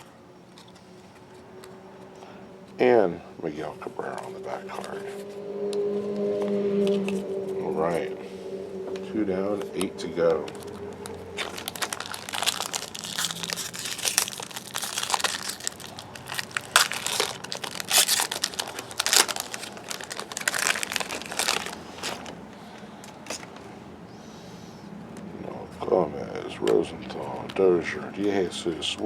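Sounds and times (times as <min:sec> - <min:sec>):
wrapper tearing and crinkling: 0:11.4 - 0:22.4.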